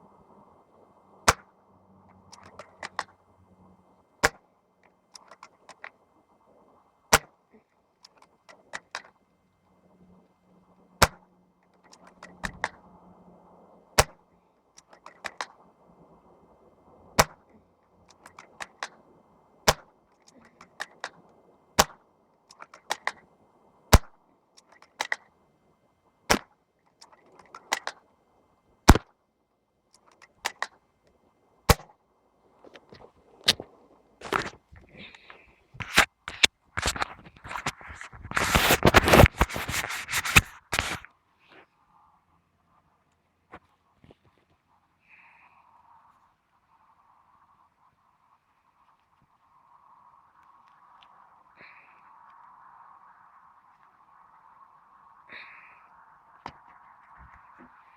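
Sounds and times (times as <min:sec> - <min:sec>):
airsoft rifle shots: 0:01.3 - 0:01.5, 0:11.0 - 0:11.3, 0:14.0 - 0:14.2, 0:17.2 - 0:17.4, 0:19.7 - 0:19.9, 0:21.8 - 0:22.0, 0:23.9 - 0:24.2, 0:26.3 - 0:26.5, 0:28.9 - 0:29.1, 0:31.7 - 0:31.9.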